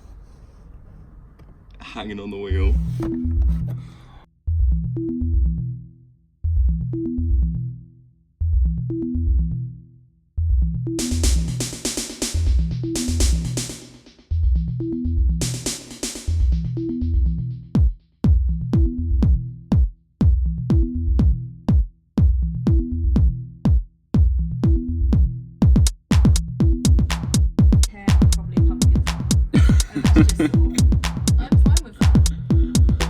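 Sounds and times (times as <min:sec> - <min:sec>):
electronic music with drum-machine beat: 0:11.0 - 0:14.0, 0:14.7 - 0:19.9, 0:20.7 - 0:23.8, 0:24.6 - 0:33.0.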